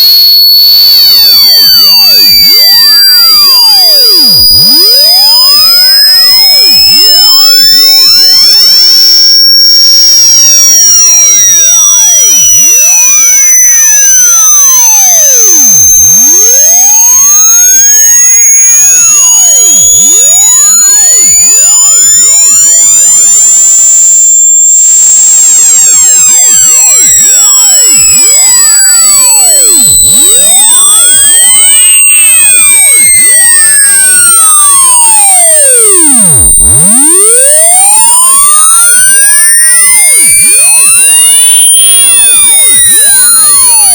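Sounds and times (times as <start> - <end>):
high-pitched electronic test tone: 0.0 - 43.9.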